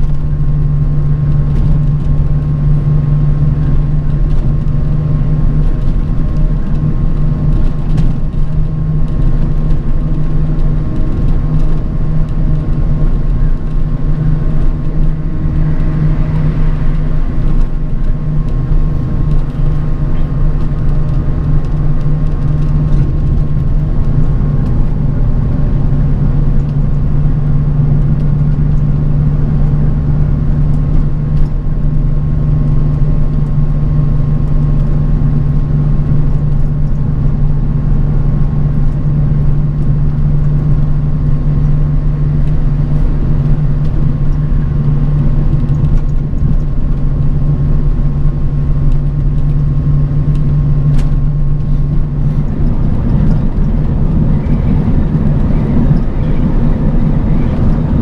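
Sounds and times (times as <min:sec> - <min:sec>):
bus engine and road drone: 0:00.0 - 0:58.0
thin steady whine: 0:13.1 - 0:58.0.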